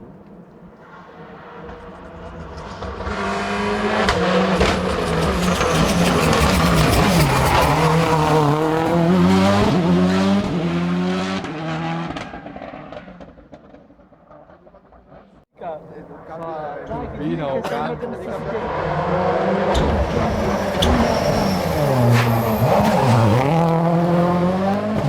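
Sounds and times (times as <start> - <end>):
rally car engine passing: 0.8 - 13.8, 18.0 - 25.0.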